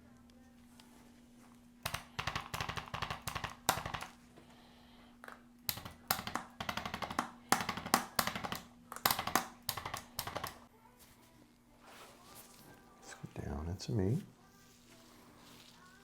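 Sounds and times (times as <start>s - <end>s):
faint steady hum: 0.0s - 16.0s
percussive vibration device tapping: 1.8s - 4.2s, 5.7s - 10.6s.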